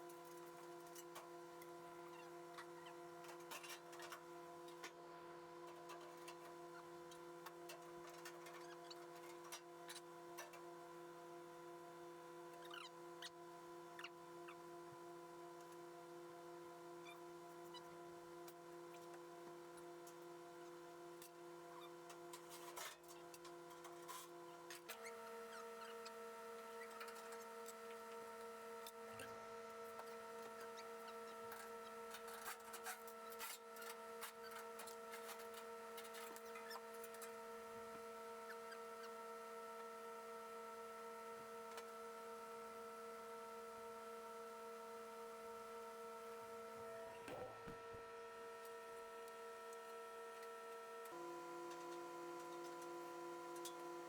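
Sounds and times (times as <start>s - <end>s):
faint hum of held tones: 0.0s - 54.0s.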